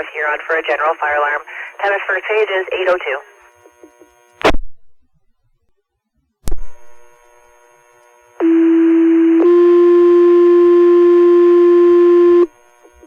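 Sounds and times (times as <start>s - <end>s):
faint radio hiss: 0.0s - 4.5s.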